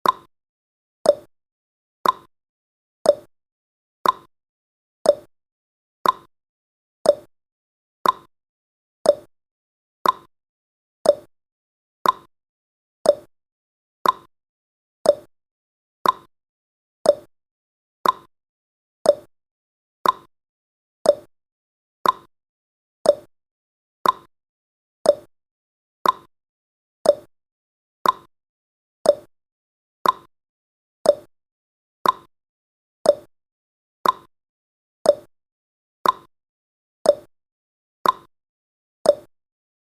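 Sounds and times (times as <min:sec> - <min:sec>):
clock ticking: 0:02.0 - 0:02.3, 0:04.0 - 0:04.3, 0:06.0 - 0:06.3, 0:08.0 - 0:08.3, 0:10.0 - 0:10.3, 0:12.0 - 0:12.3, 0:14.0 - 0:14.3, 0:15.1 - 0:15.3, 0:16.0 - 0:16.3, 0:18.0 - 0:18.3, 0:20.0 - 0:20.3, 0:22.0 - 0:22.3, 0:24.0 - 0:24.3, 0:25.1 - 0:25.3, 0:26.0 - 0:26.3, 0:27.1 - 0:27.3, 0:28.0 - 0:28.3, 0:29.1 - 0:29.3, 0:30.0 - 0:30.3, 0:32.0 - 0:32.3, 0:33.1 - 0:33.3, 0:34.0 - 0:34.3, 0:36.0 - 0:36.3, 0:38.0 - 0:38.3.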